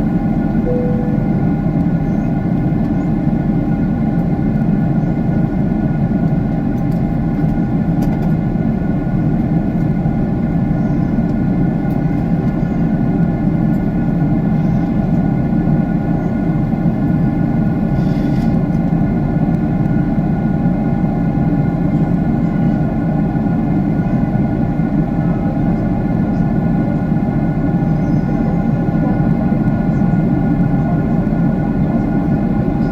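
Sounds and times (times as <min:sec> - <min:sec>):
faint steady tones: 0:00.0 - 0:02.4.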